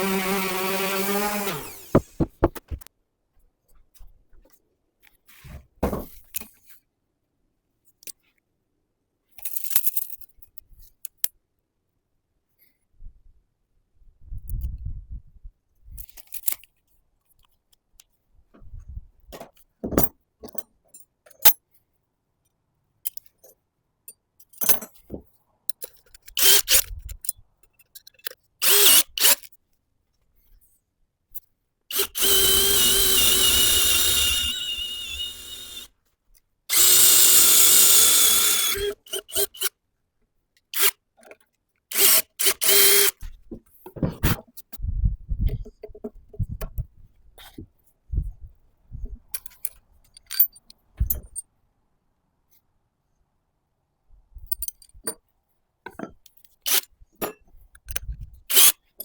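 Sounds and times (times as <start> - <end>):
power drill whining: 0.0 - 2.5, 28.6 - 29.3, 31.9 - 35.9, 36.7 - 39.7, 41.9 - 43.1
tool handling clicks and knocks: 1.5 - 2.9, 49.0 - 51.5, 54.4 - 59.0.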